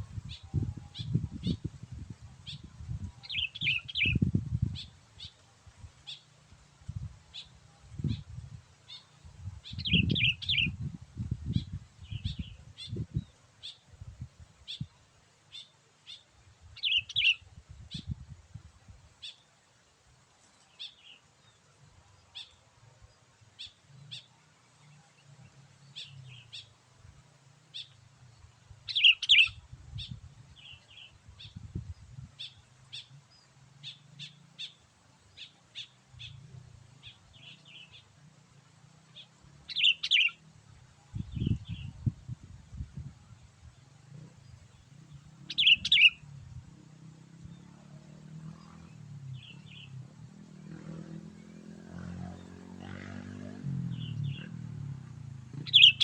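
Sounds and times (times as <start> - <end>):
bird chirping: 2.4 - 5.4, 8.9 - 13.8, 14.7 - 18.2, 20.4 - 26.8, 27.7 - 38.3, 39.0 - 40.4, 41.0 - 42.3, 43.0 - 46.3, 47.4 - 50.1, 53.8 - 56.0.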